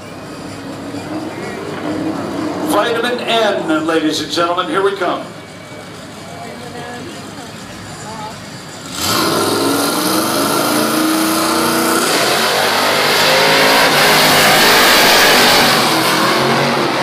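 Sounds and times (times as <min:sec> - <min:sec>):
race cars accelerating hard: 0:08.7 - 0:17.0.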